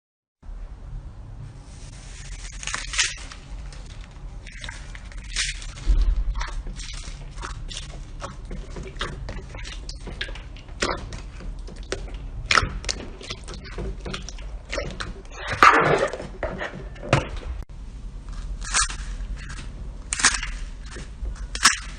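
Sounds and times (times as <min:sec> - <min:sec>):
slime squeezed by hand: 0:02.0 - 0:17.0.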